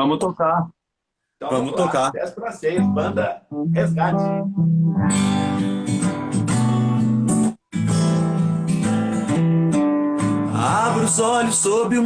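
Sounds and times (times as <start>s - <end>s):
acoustic guitar strumming: 2.8s - 12.0s.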